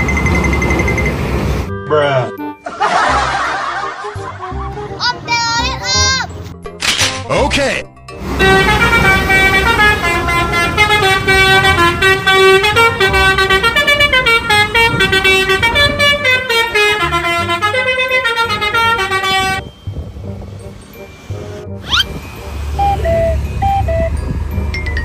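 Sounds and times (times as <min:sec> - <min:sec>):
multi-tone bus horn tune: 0:08.2 - 0:19.7, 0:22.1 - 0:24.2
low engine rumble: 0:08.2 - 0:25.0.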